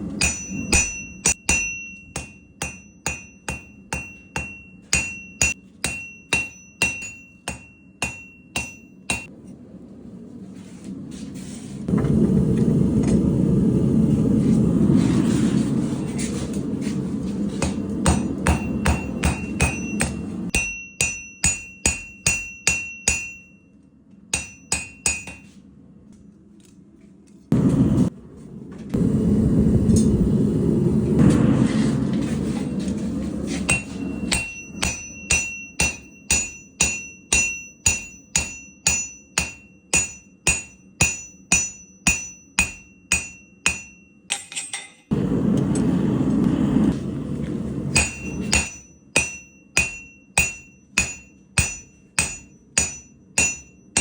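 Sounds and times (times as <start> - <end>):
hammer striking steel on anvil: 0.0 - 9.3, 17.6 - 23.7, 24.3 - 25.6, 33.5 - 45.1, 47.9 - 54.0
steady low roar: 27.5 - 33.6, 45.1 - 48.5.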